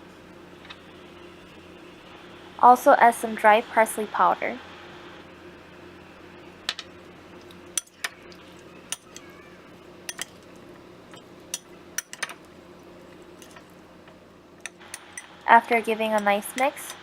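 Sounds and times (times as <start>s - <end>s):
faint steady hum: 0.0s - 17.0s
metal spoon clinking against bowl: 8.9s - 9.2s, 10.1s - 10.3s.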